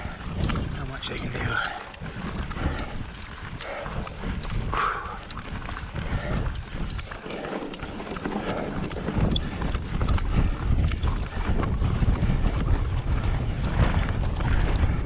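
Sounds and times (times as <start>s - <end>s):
wind buffeting microphone: 0.0s - 15.0s
bike tyres crunching over loose rock: 5.4s - 15.0s.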